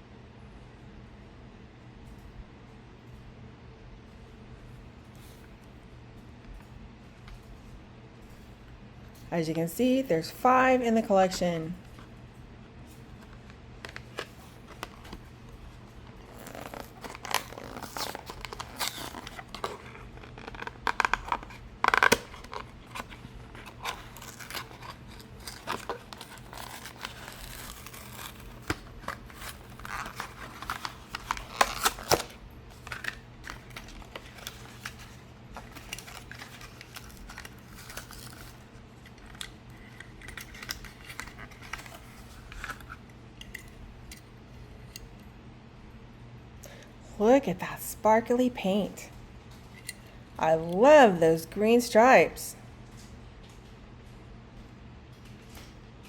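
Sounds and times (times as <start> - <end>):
plastic blister crinkling: 12.9 - 43.8
cardboard tearing: 16.1 - 38.6.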